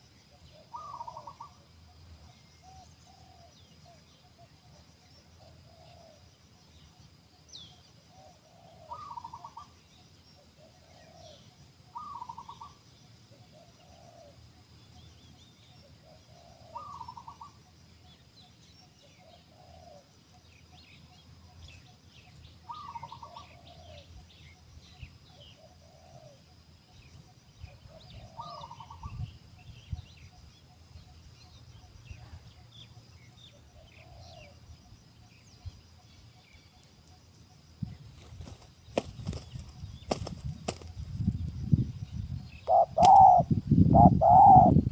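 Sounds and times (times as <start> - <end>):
small birds chirping: 0.0 - 44.9
doves cooing: 0.4 - 1.5, 5.4 - 6.3, 8.1 - 9.8, 10.5 - 12.8, 13.4 - 14.4, 15.9 - 17.6, 19.2 - 20.1, 22.7 - 24.1, 25.5 - 26.4, 27.8 - 29.2, 33.8 - 34.6, 42.6 - 44.9.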